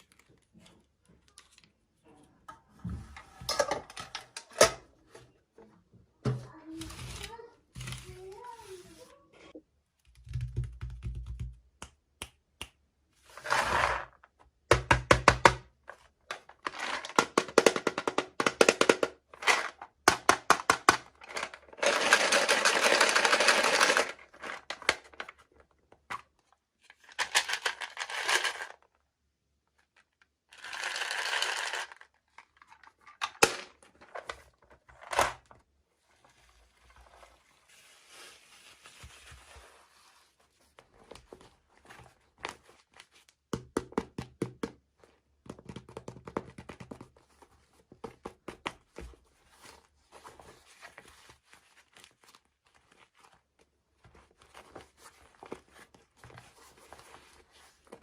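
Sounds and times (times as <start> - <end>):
plastic packaging rustling: 21.2 - 25.5.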